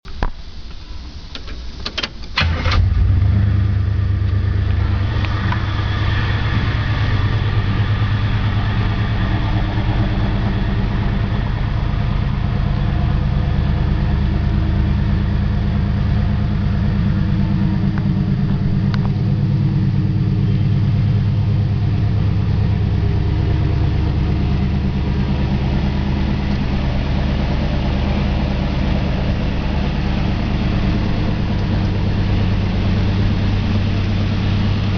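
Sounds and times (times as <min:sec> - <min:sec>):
car engine idling: 0:00.1 - 0:34.9
engine starter cranking: 0:01.3 - 0:03.2.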